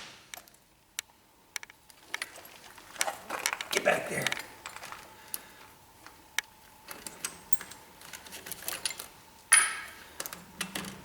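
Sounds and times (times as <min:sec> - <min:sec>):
metal tools clinking: 0:06.9 - 0:10.0.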